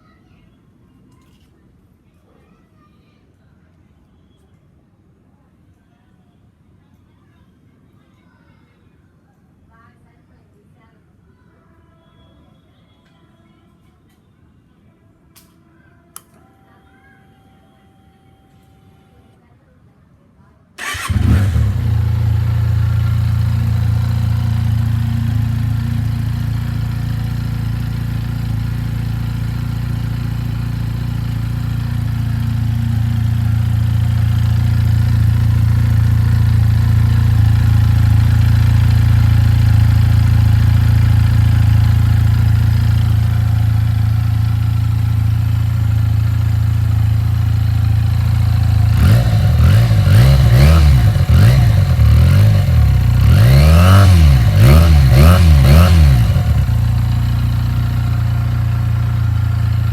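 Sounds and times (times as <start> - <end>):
engine revving: 20.8 - 59.9
motorcycle engine idling: 20.8 - 59.9.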